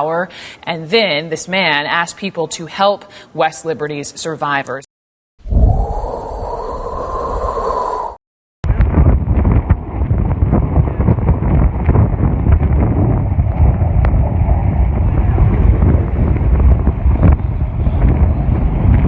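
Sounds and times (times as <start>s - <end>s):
wind buffeting microphone: 5.4s - 19.0s.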